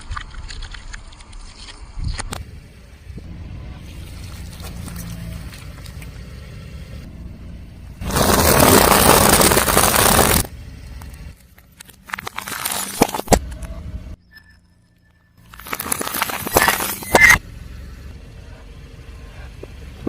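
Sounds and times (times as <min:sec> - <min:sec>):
car engine rumble: 0:00.9 - 0:20.0
tyre crushing an object: 0:08.0 - 0:10.5.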